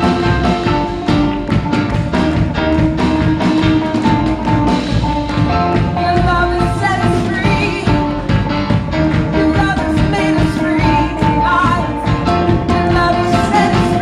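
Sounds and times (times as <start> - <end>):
driving drums: 0.0 - 14.0
worship band music: 0.0 - 14.0
person singing: 9.0 - 14.0.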